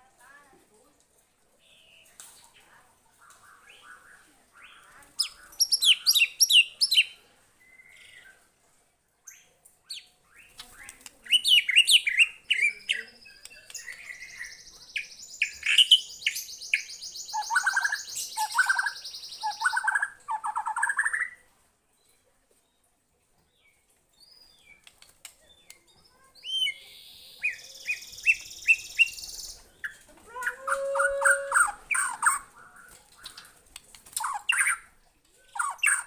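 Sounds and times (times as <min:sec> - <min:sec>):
bird singing whistled phrases: 0:11.3 - 0:21.4, 0:26.4 - 0:32.5.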